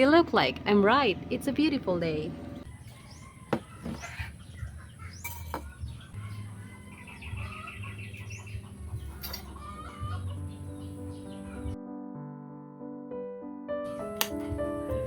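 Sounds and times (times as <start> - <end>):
low steady rumble: 0.0 - 3.4
chickens clucking: 2.6 - 11.8.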